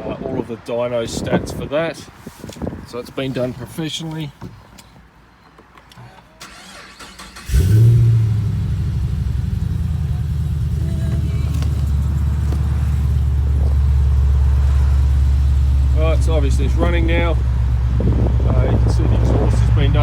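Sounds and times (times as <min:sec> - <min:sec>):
car engine starting and idling: 0:06.4 - 0:20.0.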